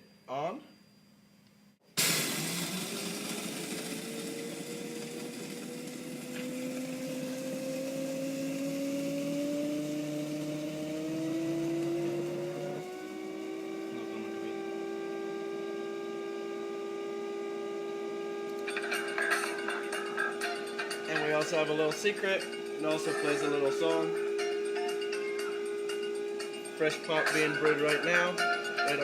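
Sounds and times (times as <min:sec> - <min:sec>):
coffee grinder motor whining: 0:02.0 - 0:29.0.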